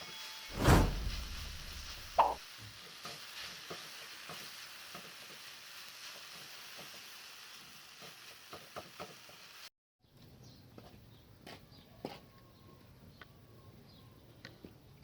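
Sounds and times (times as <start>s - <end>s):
omelette sizzling in a pan: 1.0s - 9.7s.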